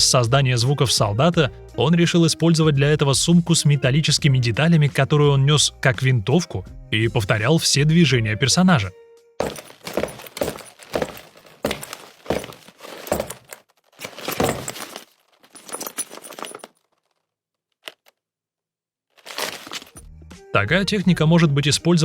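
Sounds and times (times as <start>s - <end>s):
bag of metal parts rattling: 9.4s - 17.2s, 19.2s - 20.0s.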